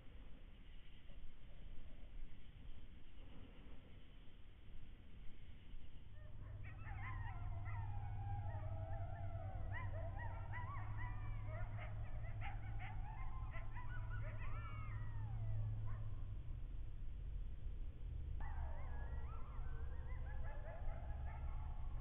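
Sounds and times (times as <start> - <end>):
steady low hum: 0.0 - 22.0
coyotes howling and yipping: 5.7 - 22.0.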